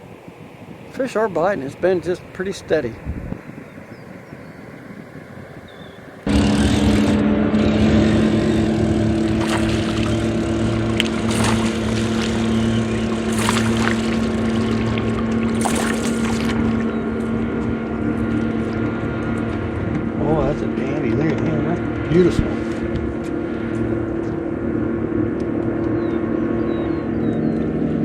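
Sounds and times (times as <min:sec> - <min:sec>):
water noise: 0:00.0 - 0:20.8
wind: 0:00.0 - 0:28.0
outboard motor running: 0:02.8 - 0:28.0.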